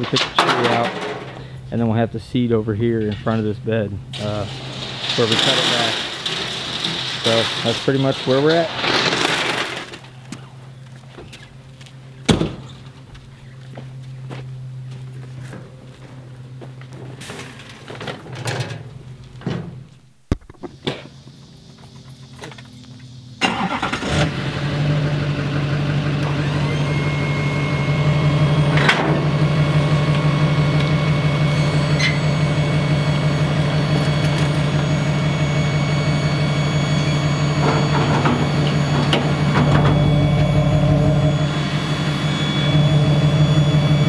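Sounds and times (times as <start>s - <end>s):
engine starting and running: 3.1s - 10.2s, 23.1s - 44.0s.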